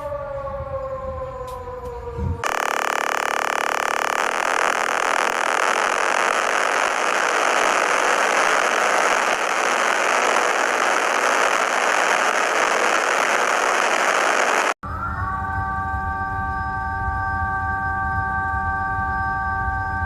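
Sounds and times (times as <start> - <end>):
loud static hiss: 2.4 - 14.8.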